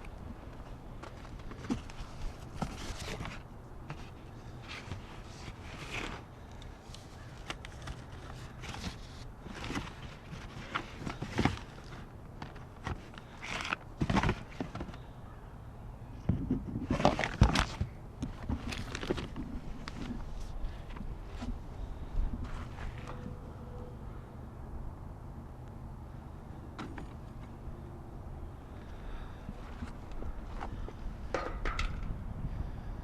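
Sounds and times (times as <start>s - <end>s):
knocks clatter and scuffs: 7.5s - 15.1s.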